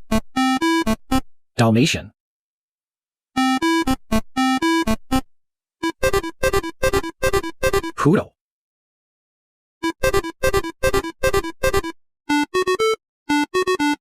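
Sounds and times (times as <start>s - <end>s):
electronic keyboard tune: 0.0s - 1.2s, 3.4s - 5.2s, 5.8s - 8.1s, 9.8s - 14.0s.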